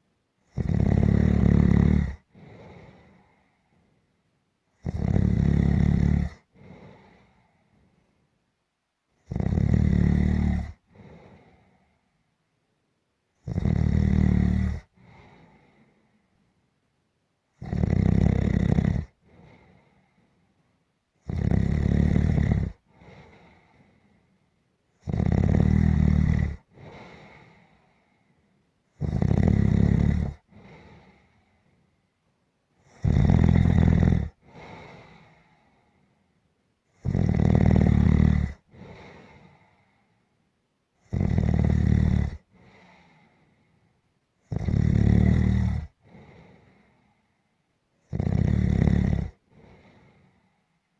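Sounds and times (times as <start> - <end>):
person snoring: 0.6 - 2.2, 4.8 - 6.4, 9.3 - 10.8, 17.6 - 19.1, 21.3 - 23.5, 25.0 - 27.1, 29.0 - 31.1, 32.9 - 35.1, 37.0 - 39.0, 41.1 - 42.4, 44.5 - 46.2, 48.1 - 49.4
faint breath: 2.2 - 4.4, 6.4 - 8.4, 10.7 - 12.4, 14.8 - 16.8, 19.1 - 20.9, 22.7 - 24.7, 26.5 - 28.8, 30.4 - 32.2, 34.3 - 36.5, 38.6 - 40.5, 42.4 - 44.2, 45.8 - 47.7, 49.3 - 50.9.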